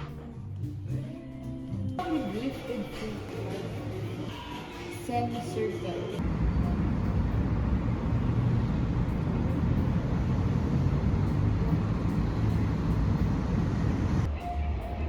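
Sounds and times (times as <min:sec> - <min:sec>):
low rumble of traffic: 0:05.1 - 0:15.0.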